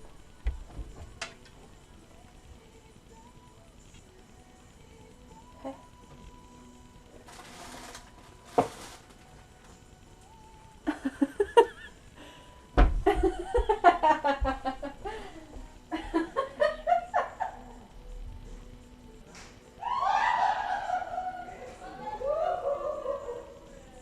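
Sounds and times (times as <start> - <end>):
person laughing: 10.8 - 12.0, 13.1 - 17.9, 20.2 - 23.6
thump: 12.8 - 13.2.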